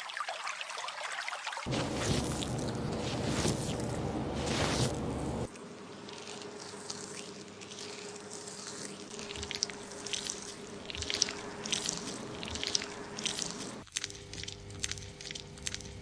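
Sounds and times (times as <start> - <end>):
fingers scrubbing lathered hair: 1.7 - 13.9.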